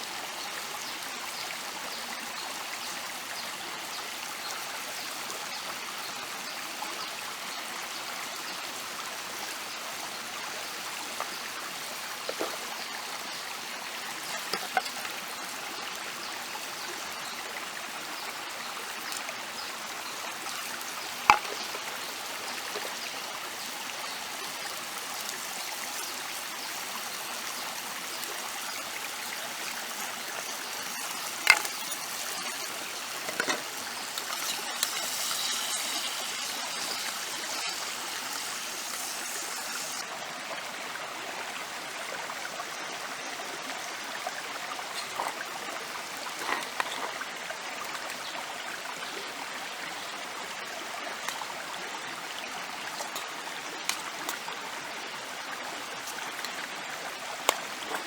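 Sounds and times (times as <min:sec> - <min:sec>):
flowing stream rushing: 0:08.6 - 0:58.0.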